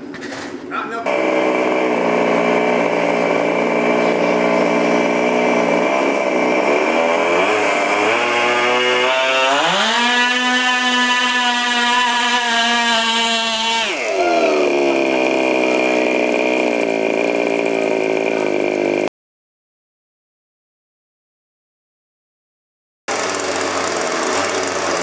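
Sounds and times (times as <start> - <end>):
small gas engine revving: 1.0 - 19.1, 23.1 - 25.0.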